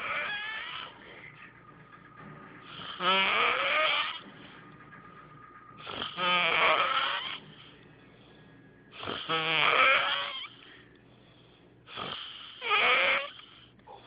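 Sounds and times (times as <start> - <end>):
quiet breaths: 0.0 - 3.2, 7.1 - 9.4, 10.2 - 12.7, 13.3 - 14.0
person snoring: 2.7 - 4.2, 8.9 - 10.6, 11.9 - 14.0.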